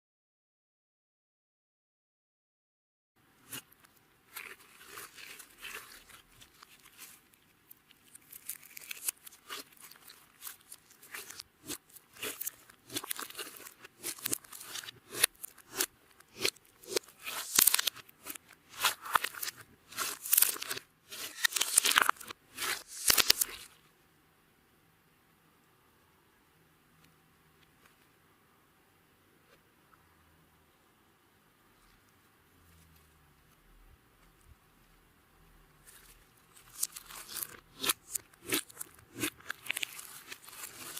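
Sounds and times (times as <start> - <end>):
slime crunching and crackling: 3.5 - 23.8, 35.8 - 40.9.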